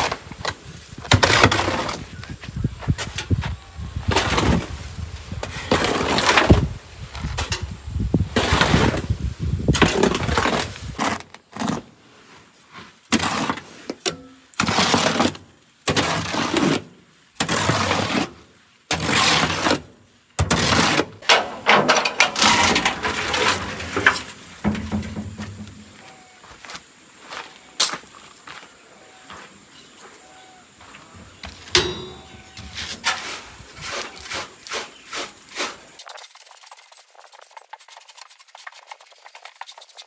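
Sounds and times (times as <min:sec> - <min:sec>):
shovel scraping sand: 0:00.0 - 0:26.3, 0:31.4 - 0:40.0.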